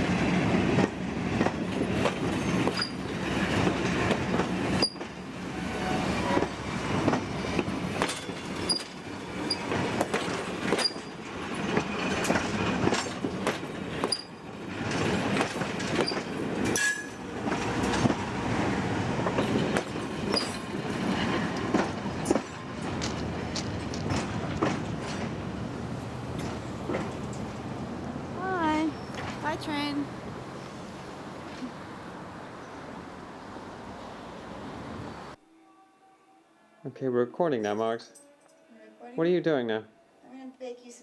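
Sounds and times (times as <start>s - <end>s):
train cars clanking over rails: 0.0s - 35.4s
wheel squeals: 2.2s - 3.5s, 4.3s - 18.1s, 19.3s - 25.4s, 28.8s - 29.4s.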